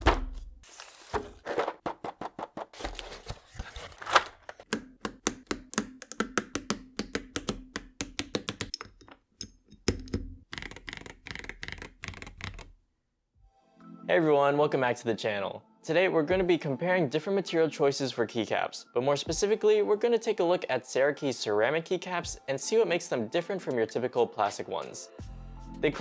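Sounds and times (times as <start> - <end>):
mechanical keyboard typing: 4.6 - 9.2, 9.8 - 12.8.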